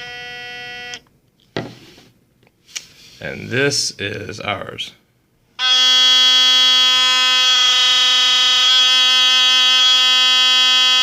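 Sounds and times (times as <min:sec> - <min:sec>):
electric toothbrush buzzing: 0:00.0 - 0:01.0, 0:05.6 - 0:11.0.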